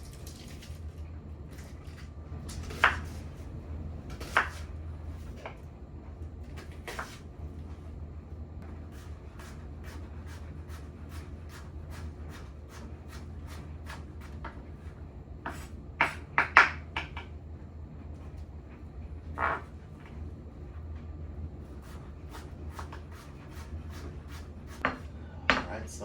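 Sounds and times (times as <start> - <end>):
low hum: 0.0 - 8.9
knife chopping on cutting board: 2.6 - 3.2, 4.1 - 4.7, 6.6 - 7.2, 8.9 - 14.6, 15.4 - 17.3, 21.8 - 25.7.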